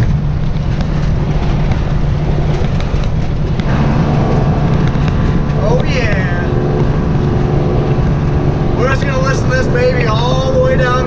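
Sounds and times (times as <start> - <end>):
pitched engine tone: 3.3 - 11.0.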